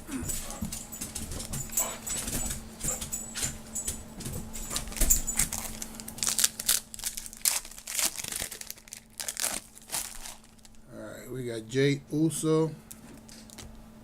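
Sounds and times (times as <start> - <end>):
steady low hum: 0.0 - 14.0
trading cards rustling: 4.8 - 10.8.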